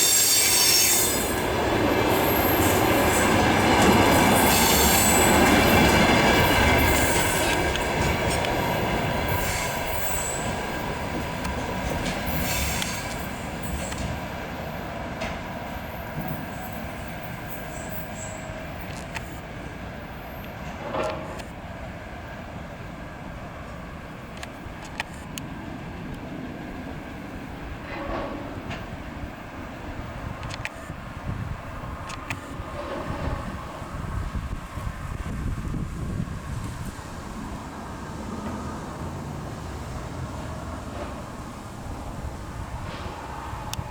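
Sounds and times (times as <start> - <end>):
train wheels squealing: 0.0 - 19.4
train rolling on rails: 0.0 - 43.9
sharp clicks from track: 18.8 - 19.4, 20.4 - 21.6, 24.3 - 25.5, 30.4 - 31.0, 32.0 - 33.1.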